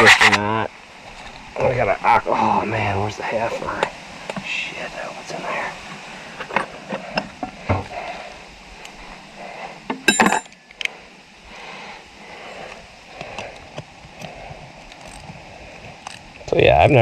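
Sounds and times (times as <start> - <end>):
metal tools clinking: 10.0 - 10.6
ringing metallic clank: 10.0 - 10.6.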